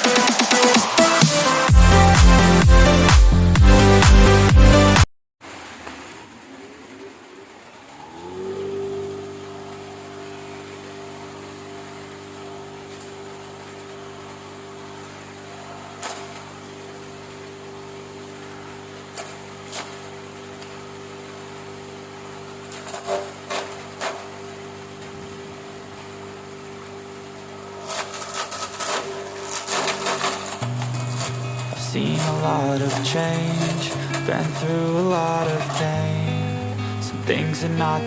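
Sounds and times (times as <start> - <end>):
electric motor humming: 9.0 - 17.7, 22.7 - 38.0
rattling clatter: 22.7 - 24.3, 27.8 - 36.0.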